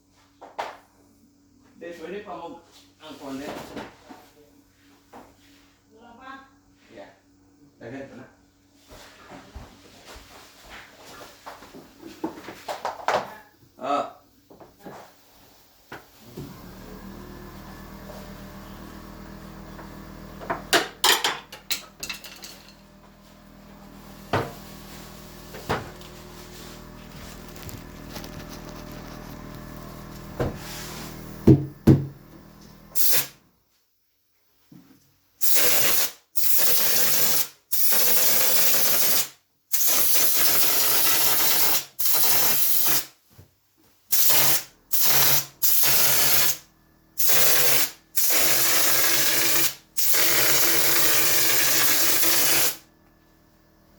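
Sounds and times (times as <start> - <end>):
spray gun hissing: 32.9 - 33.3.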